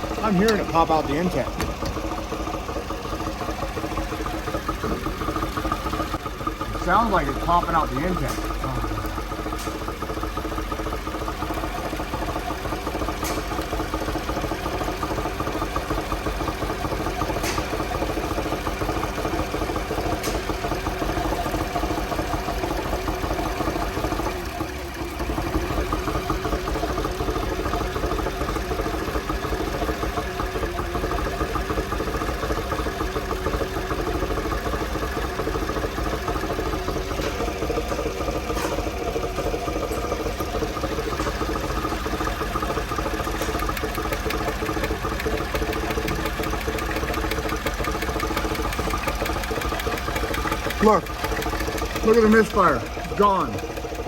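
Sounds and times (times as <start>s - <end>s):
engine idling with misfire: 0.0s - 54.0s
person talking: 0.2s - 1.8s, 6.7s - 9.2s, 50.8s - 51.2s, 52.0s - 53.6s.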